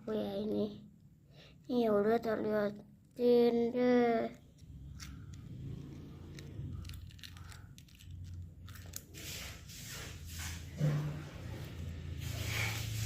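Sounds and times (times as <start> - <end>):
crinkly crackling clicks: 6.3 - 9.1.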